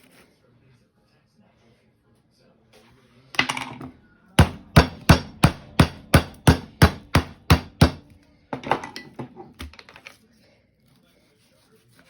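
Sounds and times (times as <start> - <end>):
meat pounded on cutting board: 4.4 - 8.1.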